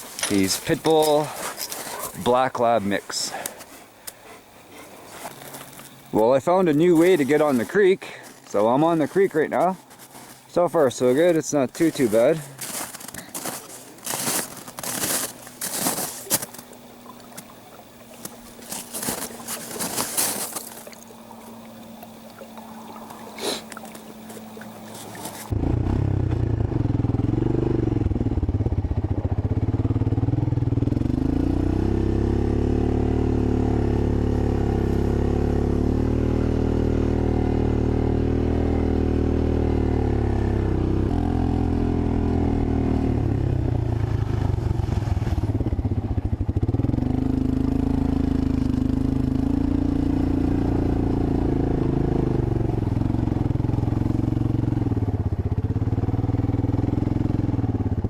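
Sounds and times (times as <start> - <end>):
single-cylinder engine running: 23.7 - 58.0.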